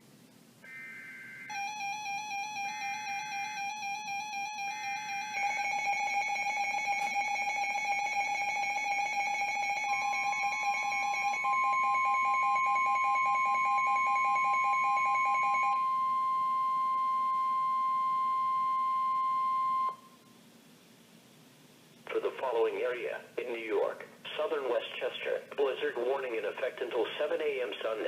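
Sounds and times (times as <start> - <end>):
steady warning alarm tone: 0.6 - 20.3
fast-pulsing alarm beep: 1.0 - 20.2.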